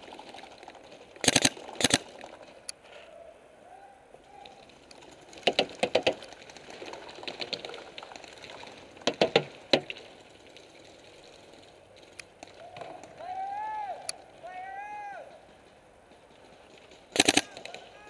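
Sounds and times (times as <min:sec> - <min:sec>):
paintball marker firing: 0:17.2 - 0:17.6.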